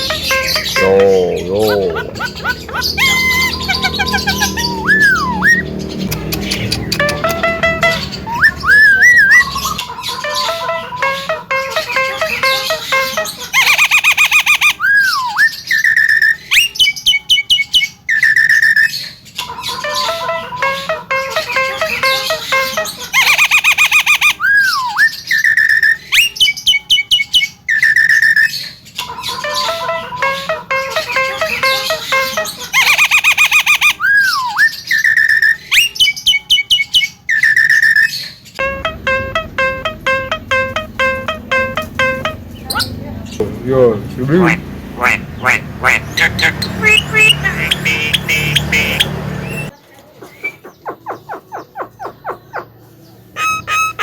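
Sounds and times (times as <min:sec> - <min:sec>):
bird whistling and chattering: 0:00.0 - 0:19.2, 0:21.9 - 0:28.7, 0:29.4 - 0:43.4, 0:44.4 - 0:52.7, 0:53.4 - 0:54.0
rhythmic repeated notes with low beat: 0:06.8 - 0:09.6, 0:38.6 - 0:42.7.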